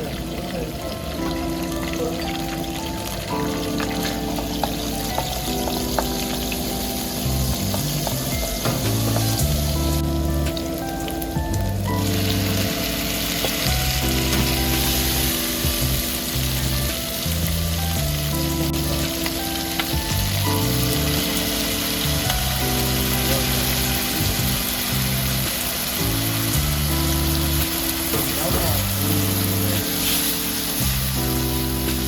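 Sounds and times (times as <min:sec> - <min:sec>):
background music: 0:00.0 - 0:32.0
food sizzling in hot oil: 0:00.0 - 0:32.0.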